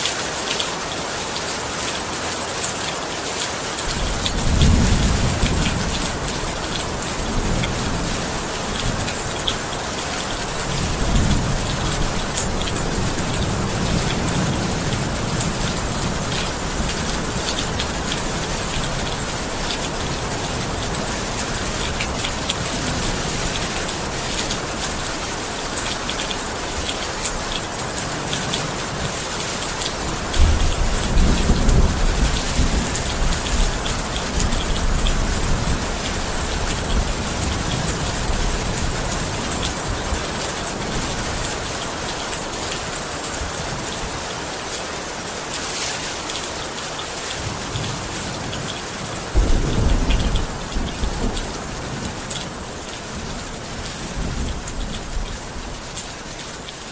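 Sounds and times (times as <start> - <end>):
heavy rain falling: 0.0 - 56.9
thunder rumbling: 3.9 - 9.4, 49.3 - 55.7.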